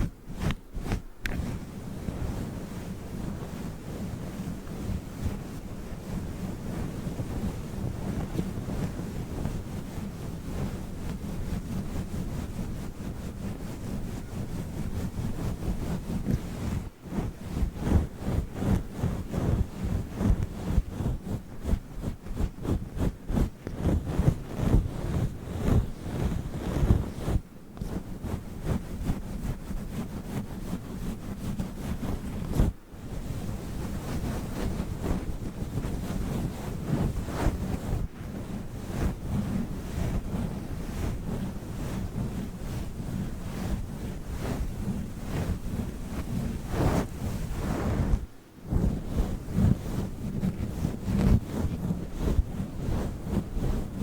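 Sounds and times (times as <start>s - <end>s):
microphone cover rubbing: 0.0s - 54.0s.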